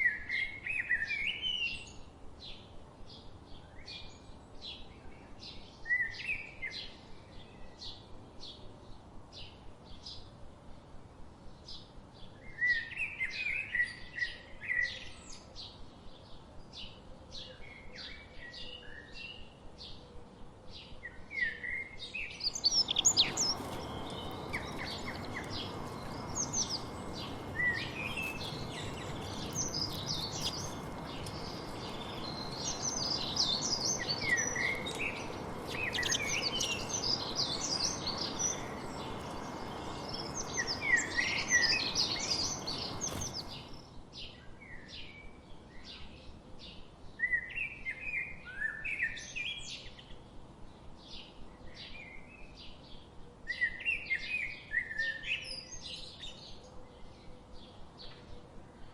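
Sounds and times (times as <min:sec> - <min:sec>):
songbirds chirping: 0:00.0 - 0:58.9
steady background hiss: 0:22.2 - 0:44.0.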